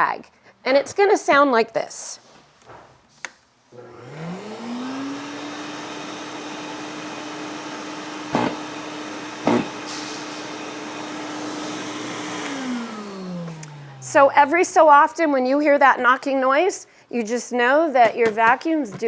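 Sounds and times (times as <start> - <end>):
vacuum motor whine: 3.8 - 14.7.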